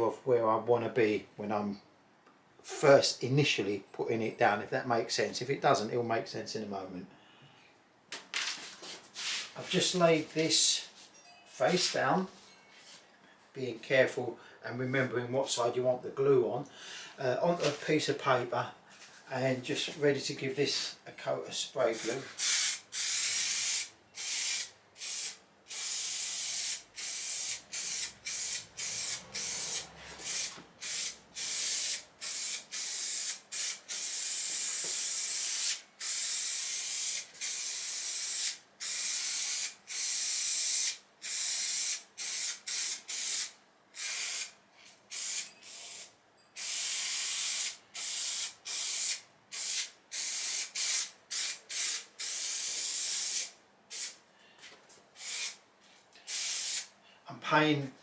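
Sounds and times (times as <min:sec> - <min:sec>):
aerosol spray can hissing: 0:22.0 - 0:44.5, 0:45.1 - 0:54.2, 0:55.2 - 0:55.6, 0:56.3 - 0:56.9.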